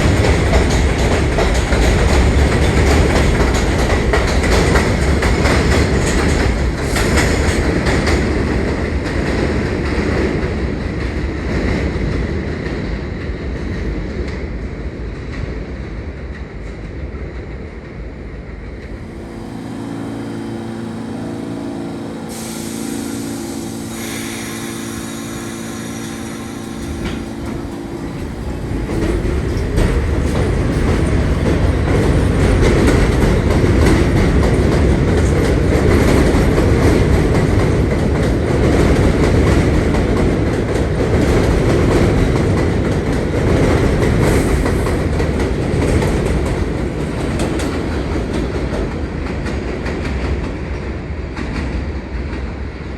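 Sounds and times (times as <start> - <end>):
train wheels rumbling on rails: 0.0 - 52.9
steady hum with high whine: 18.9 - 30.0.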